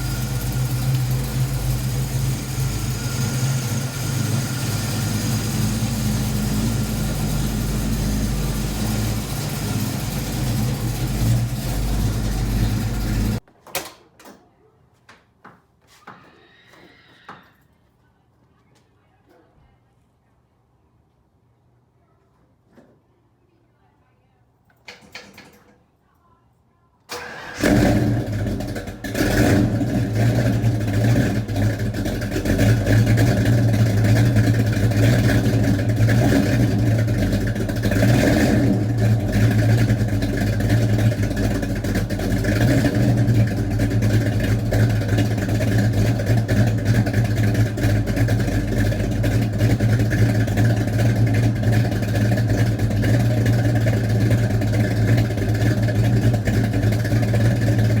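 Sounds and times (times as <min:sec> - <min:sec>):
car engine starting and running: 0:00.0 - 0:13.4, 0:27.1 - 0:58.0.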